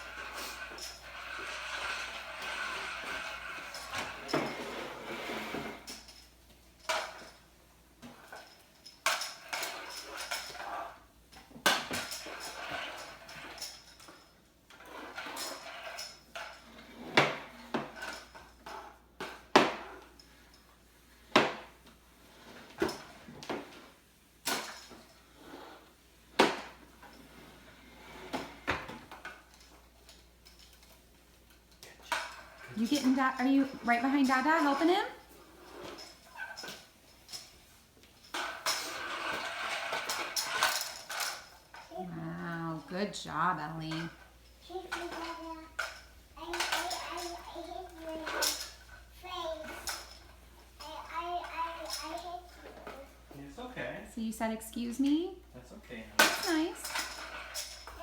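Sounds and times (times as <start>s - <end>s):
rustling clatter: 0.0s - 53.4s, 56.1s - 58.0s.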